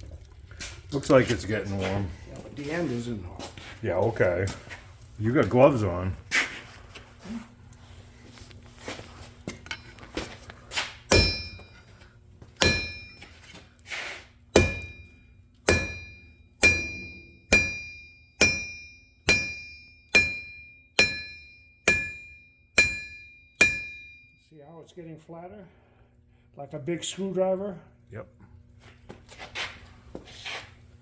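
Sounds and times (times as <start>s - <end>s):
hammer striking steel on anvil: 11.1s - 11.9s, 12.6s - 13.3s, 14.5s - 24.4s.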